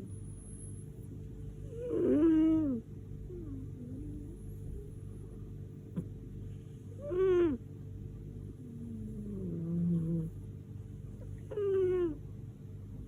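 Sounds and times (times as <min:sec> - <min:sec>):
cat snoring with whistling tone: 0:01.6 - 0:04.8, 0:08.7 - 0:10.3.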